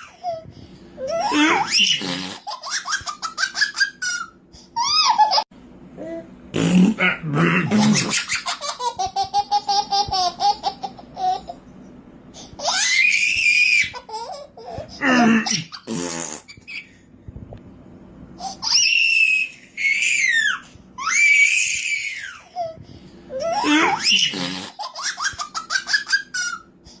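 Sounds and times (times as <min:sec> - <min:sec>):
baby giggling and squealing: 0:01.0 - 0:05.5, 0:12.5 - 0:17.0, 0:18.4 - 0:22.7
adult making silly vocal noises: 0:01.2 - 0:02.4, 0:06.1 - 0:08.1, 0:15.0 - 0:16.5, 0:23.5 - 0:24.7.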